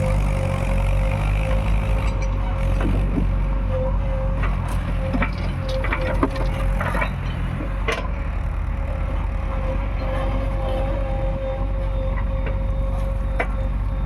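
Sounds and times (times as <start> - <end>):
diesel engine running: 0.0 - 14.0
metal knocks and clanks: 4.4 - 8.2.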